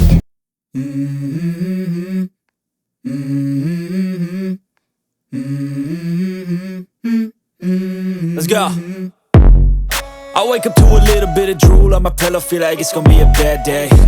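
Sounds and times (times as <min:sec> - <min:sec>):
wordless hummed vocal melody: 0:10.0 - 0:14.0.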